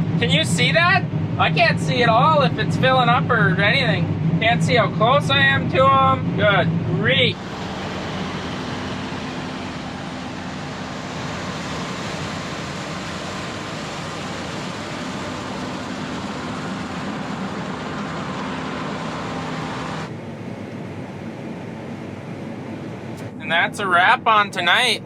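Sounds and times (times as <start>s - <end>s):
combine harvester engine running: 7.2s - 25.0s.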